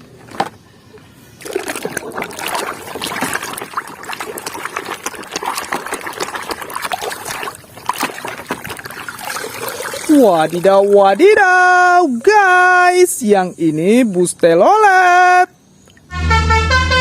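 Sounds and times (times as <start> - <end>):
water splashing and trickling: 1.3 - 13.4.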